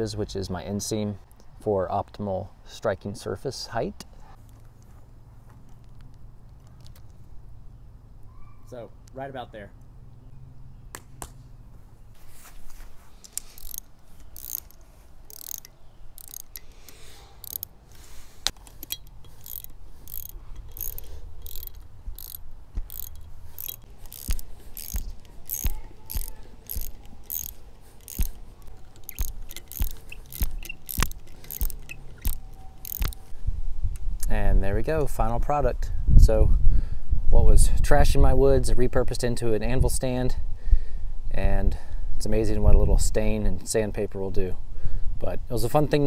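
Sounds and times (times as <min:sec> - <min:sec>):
ratchet tool clicking: 0:13.2 - 0:17.8, 0:18.4 - 0:33.3.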